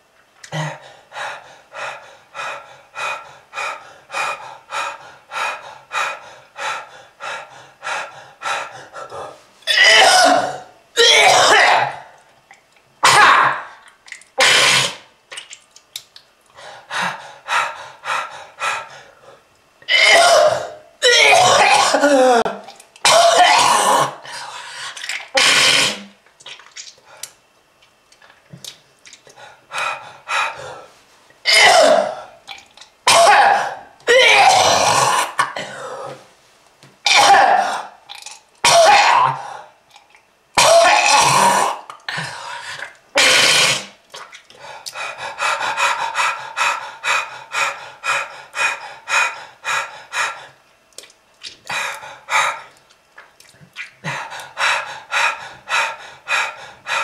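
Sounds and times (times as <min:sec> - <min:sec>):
harsh hacking coughs: 0:09.7 - 0:12.0, 0:19.9 - 0:22.2, 0:23.0 - 0:24.2, 0:31.5 - 0:32.2, 0:33.1 - 0:35.9, 0:37.0 - 0:37.9, 0:38.6 - 0:39.4.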